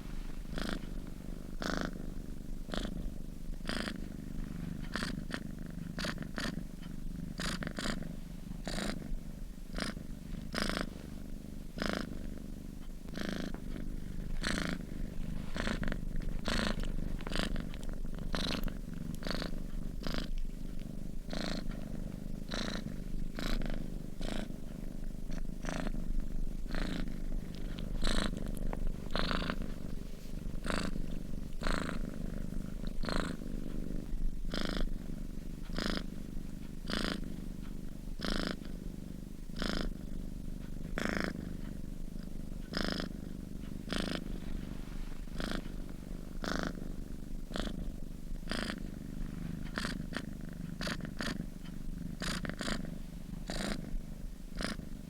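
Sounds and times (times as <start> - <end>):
cat purring: 0.0 - 55.0.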